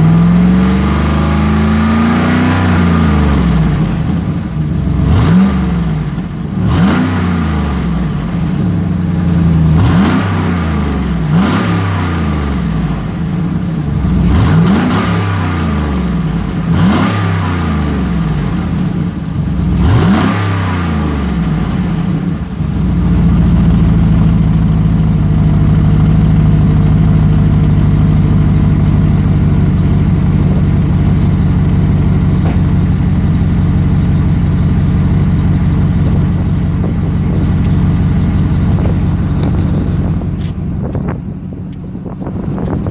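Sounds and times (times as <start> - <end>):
truck engine idling: 0.0 - 6.8, 7.4 - 11.4, 21.3 - 42.9
truck engine revving: 0.0 - 42.9.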